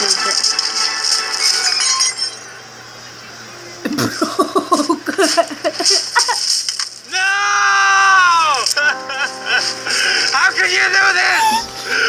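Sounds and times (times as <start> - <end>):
person laughing: 3.9 - 6.5, 8.5 - 10.4, 11.0 - 12.0.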